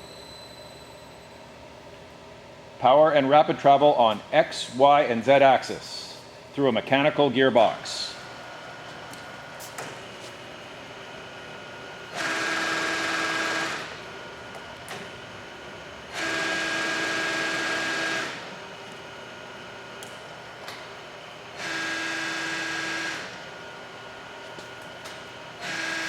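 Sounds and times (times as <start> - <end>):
quiet machine hum: 0.0 - 26.0
geared table feed whine: 7.9 - 26.0.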